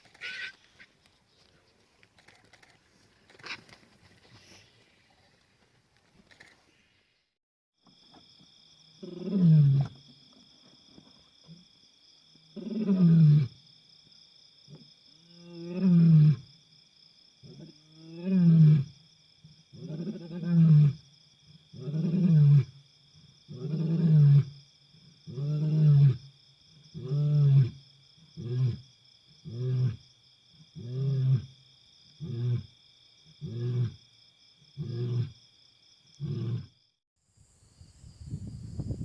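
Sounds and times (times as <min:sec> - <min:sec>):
lion roaring: 0:36.2 - 0:36.7.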